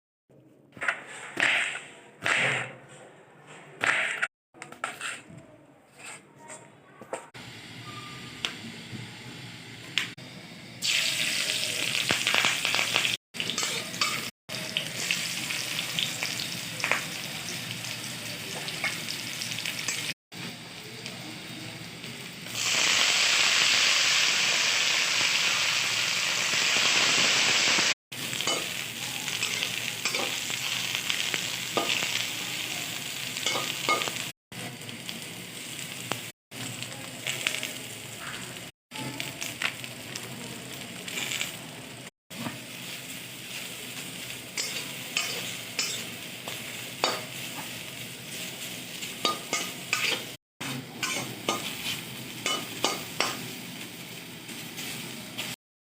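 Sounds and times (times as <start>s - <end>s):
eggplant sizzling in hot oil: 9.5s - 55.6s
spatula clicking and scraping pan: 44.6s - 47.7s.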